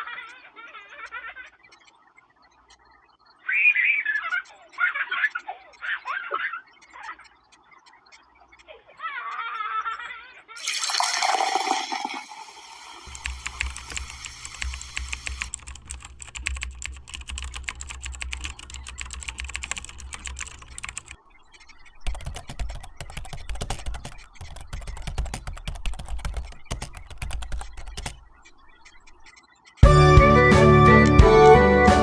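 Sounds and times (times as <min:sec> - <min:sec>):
keyboard typing clicks: 0:10.6 - 0:29.8.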